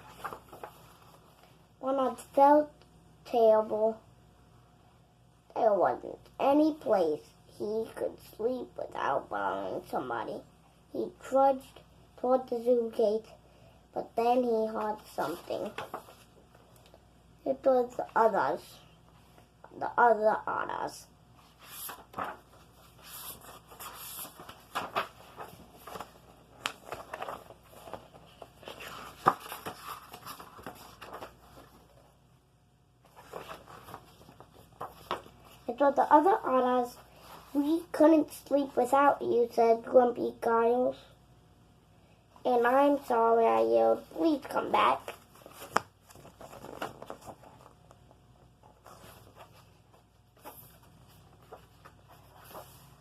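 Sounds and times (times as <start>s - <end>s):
paper book rustling: 0.0s - 1.6s, 14.6s - 16.7s, 21.4s - 32.0s, 33.0s - 38.0s, 43.9s - 53.0s
book pages clicking: 45.6s - 47.7s.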